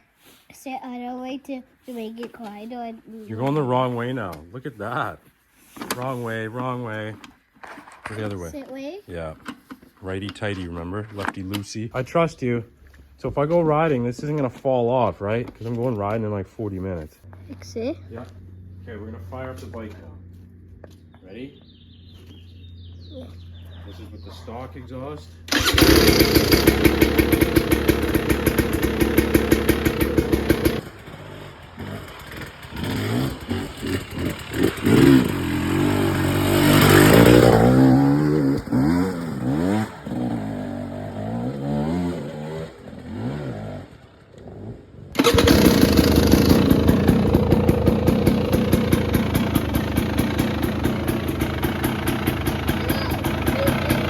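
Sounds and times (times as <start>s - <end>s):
two-stroke dirt bike engine popping: 25.5s - 54.0s.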